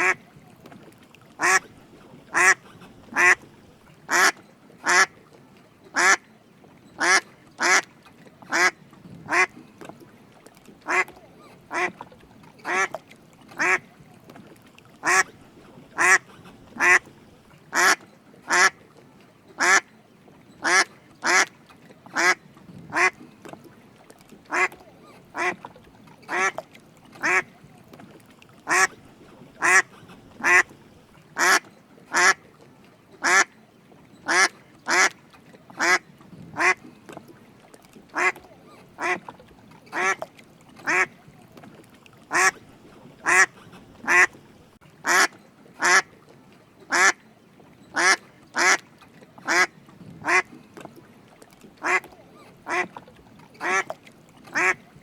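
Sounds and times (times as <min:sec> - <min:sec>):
duck quacking: 0:01.4 - 0:01.6, 0:02.3 - 0:03.4, 0:04.1 - 0:05.1, 0:09.3 - 0:09.5, 0:10.9 - 0:11.1, 0:11.7 - 0:11.9, 0:13.6 - 0:13.8, 0:15.0 - 0:15.3, 0:16.0 - 0:17.1, 0:17.7 - 0:18.8, 0:24.5 - 0:24.8, 0:25.4 - 0:25.6, 0:26.3 - 0:26.6, 0:27.2 - 0:27.5, 0:28.7 - 0:28.9, 0:29.6 - 0:30.7, 0:31.4 - 0:32.4, 0:34.3 - 0:35.1, 0:36.6 - 0:36.8, 0:38.2 - 0:38.4, 0:39.0 - 0:39.2, 0:39.9 - 0:40.2, 0:40.9 - 0:41.1, 0:42.3 - 0:42.6, 0:43.2 - 0:44.4, 0:45.0 - 0:46.1, 0:48.0 - 0:48.8, 0:49.5 - 0:50.5, 0:52.7 - 0:52.9, 0:53.6 - 0:53.9, 0:54.5 - 0:54.8.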